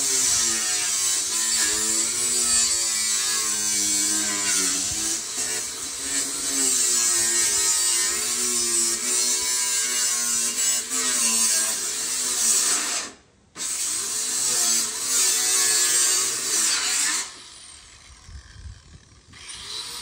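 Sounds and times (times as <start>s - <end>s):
power drill running under load: 16.0s - 20.0s.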